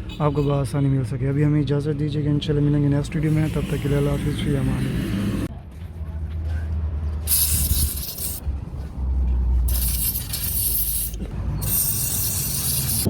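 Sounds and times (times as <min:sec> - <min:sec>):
aerosol spray bursts: 0:07.3 - 0:08.4, 0:09.7 - 0:13.0.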